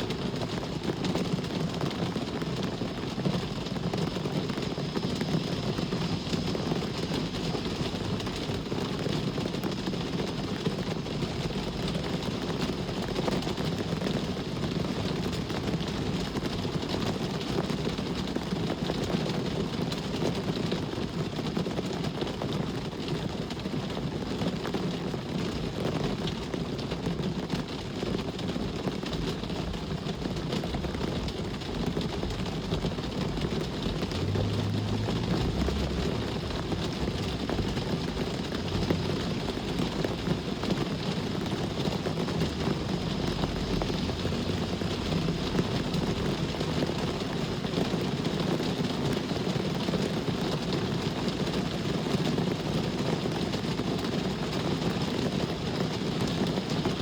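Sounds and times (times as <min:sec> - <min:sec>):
road traffic rumble: 0:00.0 - 0:19.9, 0:28.6 - 0:51.7
rain pattering: 0:00.0 - 0:57.0.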